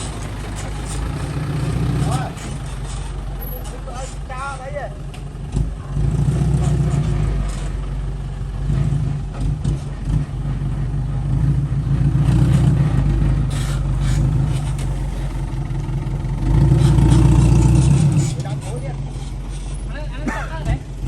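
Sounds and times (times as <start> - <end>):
heavy diesel engine running: 0.0 - 21.0.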